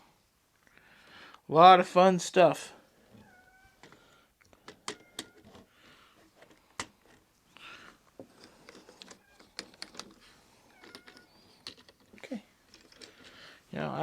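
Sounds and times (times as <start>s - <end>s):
plastic bricks clicking: 8.2s - 13.4s.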